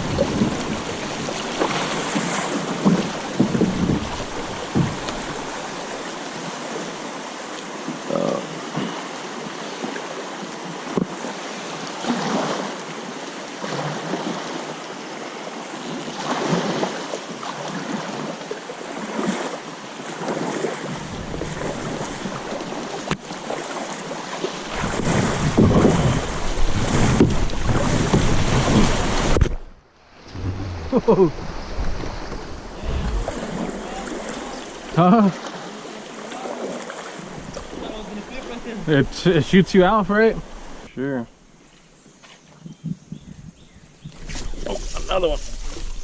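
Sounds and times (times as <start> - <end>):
wind buffeting microphone: 0.0 - 5.8, 30.3 - 35.0, 42.6 - 46.0
floodwater rushing and splashing: 0.0 - 41.7.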